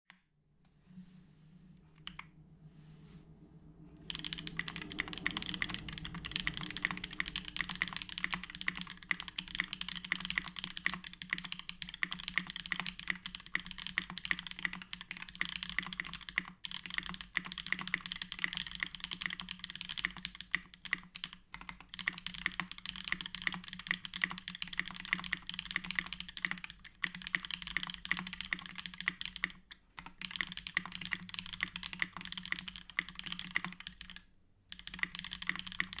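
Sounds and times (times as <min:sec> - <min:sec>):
fast mechanical keyboard typing: 0:04.0 - 0:36.0.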